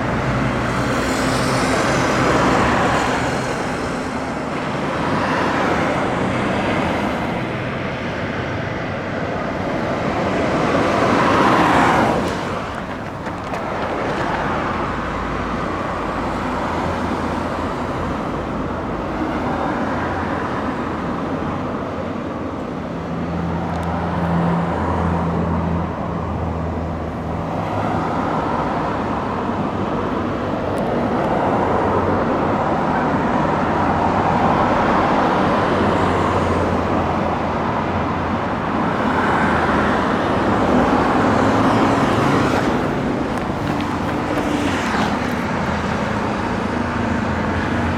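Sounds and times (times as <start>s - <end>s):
cars passing: 0.0s - 21.8s, 23.3s - 47.9s
vehicle passing close: 39.8s - 47.5s.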